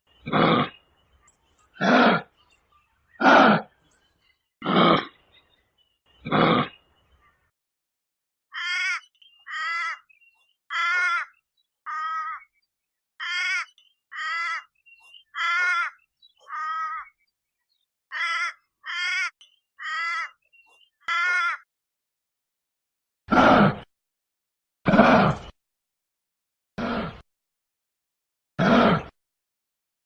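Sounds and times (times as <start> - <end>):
animal giving harsh calls: 0.2 - 0.8, 1.8 - 2.4, 3.2 - 3.8, 6.2 - 6.8, 23.3 - 23.9, 24.9 - 25.5, 28.6 - 29.2.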